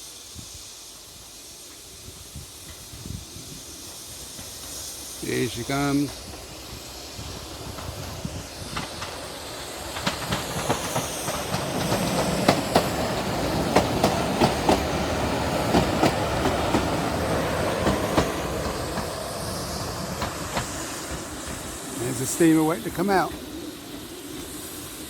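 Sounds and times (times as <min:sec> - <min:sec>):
train rumble: 0:00.0 - 0:25.0
train wheels clacking over rail joints: 0:03.8 - 0:24.6.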